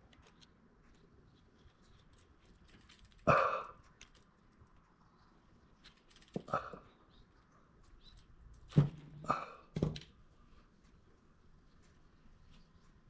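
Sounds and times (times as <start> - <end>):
clicks and rattles of seatbelt parts: 5.8 - 6.5.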